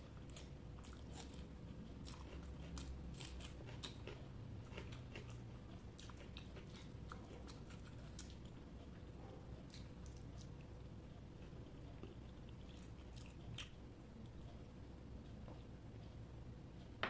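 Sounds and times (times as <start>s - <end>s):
chewing and wet mouth smacks: 0.3s - 8.6s, 9.6s - 10.7s.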